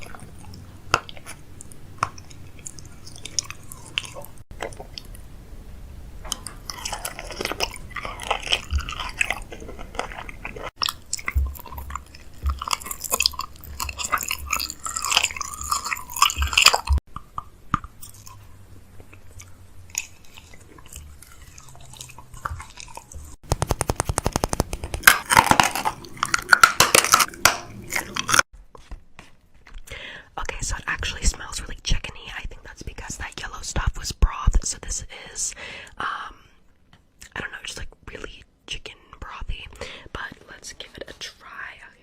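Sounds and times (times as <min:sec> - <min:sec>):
crunching and crinkling handling: 0:06.2 - 0:17.0, 0:19.0 - 0:29.8.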